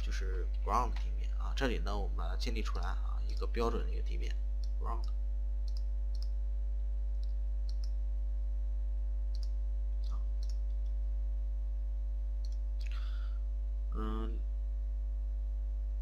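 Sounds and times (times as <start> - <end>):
electrical mains hum: 0.0 - 16.0
computer mouse clicks: 4.6 - 6.4, 7.2 - 8.0, 9.3 - 10.8.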